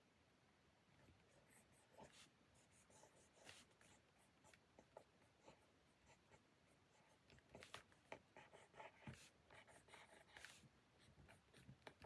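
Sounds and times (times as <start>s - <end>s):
writing on paper: 1.0s - 12.0s.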